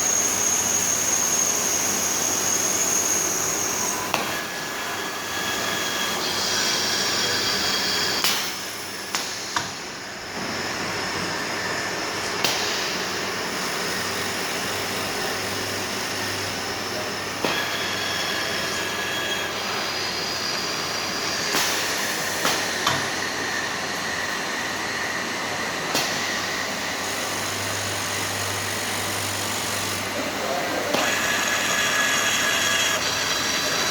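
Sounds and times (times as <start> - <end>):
machine whines changing pitch: 0.0 - 9.0
dosing machine hissing and humming: 0.0 - 33.9.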